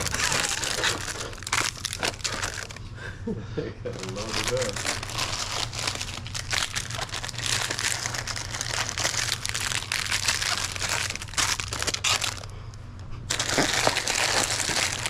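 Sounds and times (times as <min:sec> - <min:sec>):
plastic wrappers crinkling: 0:00.0 - 0:02.9, 0:03.9 - 0:15.0.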